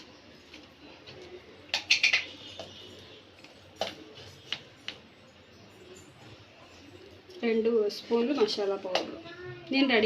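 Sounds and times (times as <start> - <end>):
utensils clinking against a bowl: 0.0 - 7.0.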